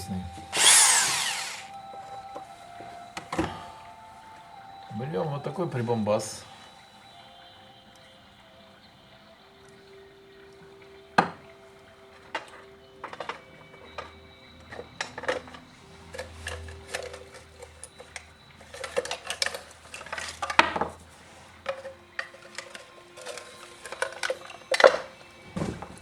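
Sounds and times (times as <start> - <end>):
metal tools clinking on workbench: 11.2 - 26.0.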